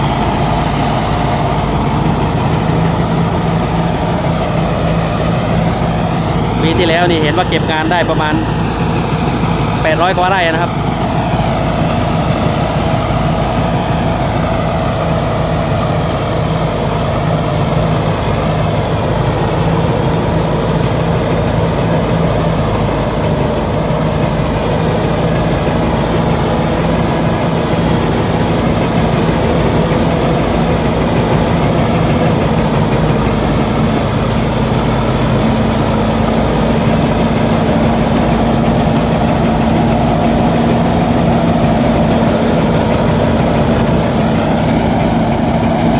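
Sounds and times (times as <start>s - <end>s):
combine harvester engine drone: 0.0s - 45.9s
high-pitched whine: 0.0s - 45.9s.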